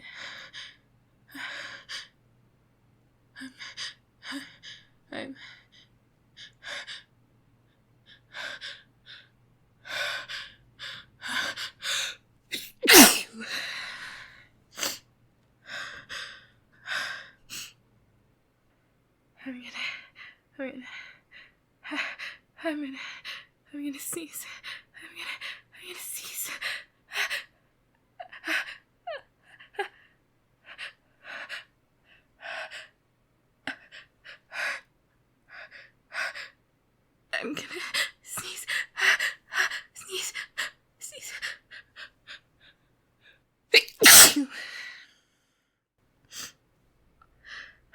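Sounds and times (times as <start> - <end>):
woman sneezing: 12.6 - 13.4, 43.8 - 44.6.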